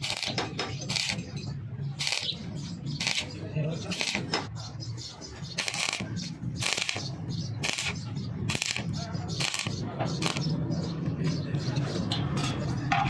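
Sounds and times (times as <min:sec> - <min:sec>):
welding arc crackling and hissing: 0:00.0 - 0:01.2, 0:02.0 - 0:02.4, 0:03.0 - 0:04.4, 0:05.6 - 0:07.0, 0:07.6 - 0:10.4.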